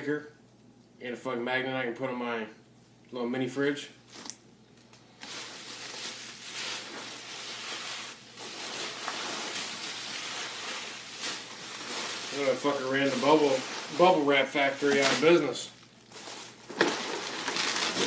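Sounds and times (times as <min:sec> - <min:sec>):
bubble wrap rustling and crinkling: 0:05.1 - 0:18.0.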